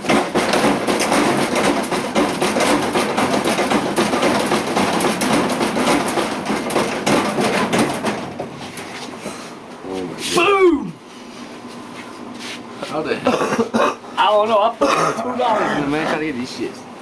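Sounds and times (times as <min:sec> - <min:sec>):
vending machine rattling: 0:00.0 - 0:08.9.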